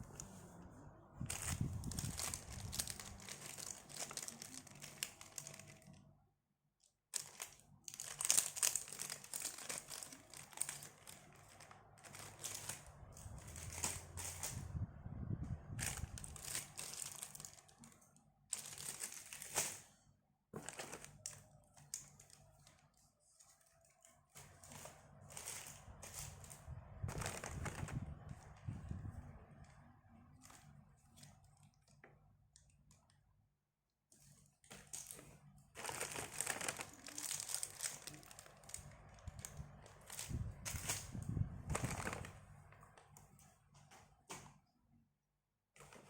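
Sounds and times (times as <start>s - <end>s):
packaging crinkling and tearing: 1.3s - 6.0s, 7.1s - 14.6s, 15.8s - 19.8s, 20.6s - 22.8s, 24.4s - 28.6s, 34.7s - 42.4s.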